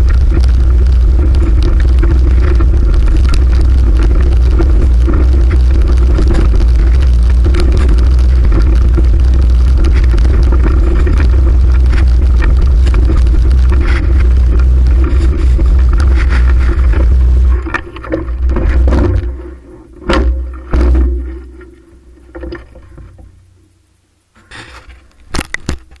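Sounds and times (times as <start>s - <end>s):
wind rumbling on microphone: 0.0s - 23.9s
bicycle road noise: 0.0s - 26.0s
sharp knocks: 20.0s - 21.4s.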